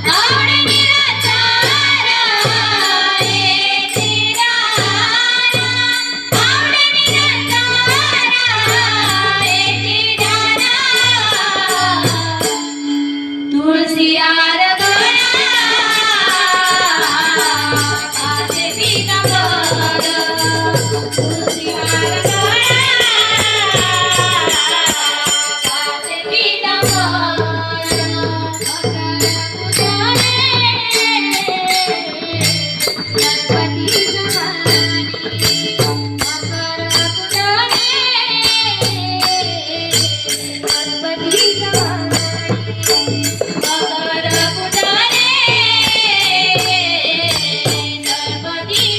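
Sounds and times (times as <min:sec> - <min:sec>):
hand cymbals clinking: 0:14.9 - 0:48.9.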